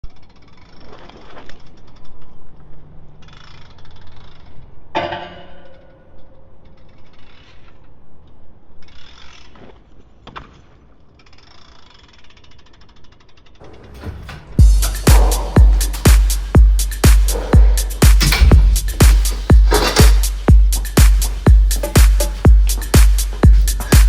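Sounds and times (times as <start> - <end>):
mechanical ratcheting and clattering: 11.1 - 24.0
sharp ringing knocks: 14.6 - 24.0.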